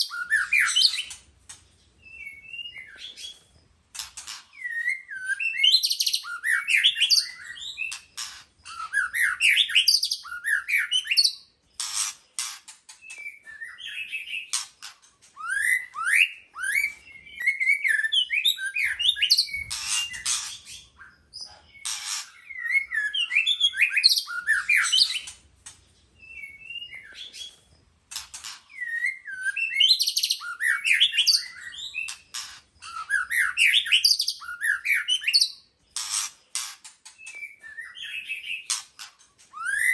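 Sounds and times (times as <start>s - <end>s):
bird singing rich whistles: 0.0s - 1.2s, 2.1s - 3.3s, 4.6s - 8.0s, 8.7s - 11.5s, 13.1s - 14.6s, 15.4s - 21.1s, 22.4s - 25.3s, 26.2s - 27.6s, 28.7s - 32.2s, 32.8s - 35.7s, 37.2s - 38.8s, 39.5s - 39.9s.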